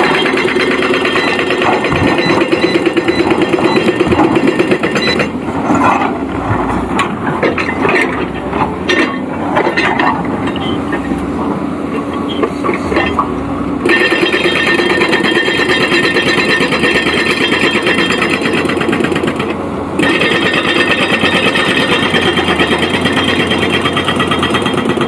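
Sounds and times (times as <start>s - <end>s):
metallic clanks and knocks: 0.0s - 11.2s
excavator engine running: 0.0s - 25.0s.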